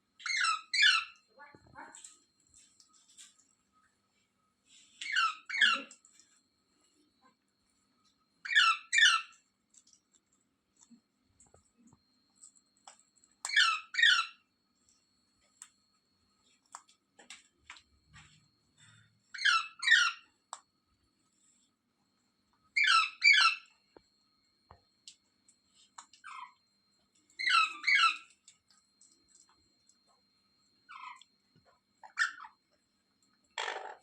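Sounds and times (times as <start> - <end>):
parakeet shrill calls: 0.2 - 1.1, 5.0 - 5.9, 8.4 - 9.3, 13.5 - 14.4, 19.4 - 20.2, 22.8 - 23.6, 27.4 - 28.3, 32.0 - 32.5.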